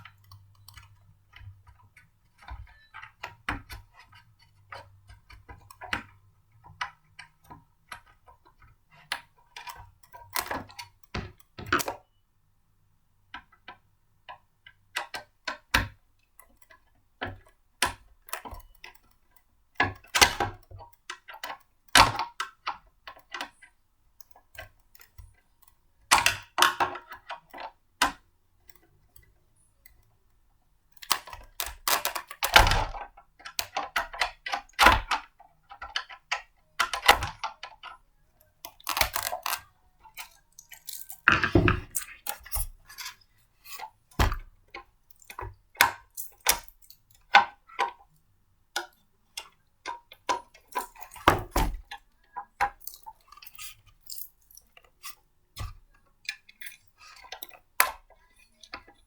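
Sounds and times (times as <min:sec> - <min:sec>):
blender parts clicking and clattering: 0:38.6 - 0:44.5, 0:50.3 - 0:52.0.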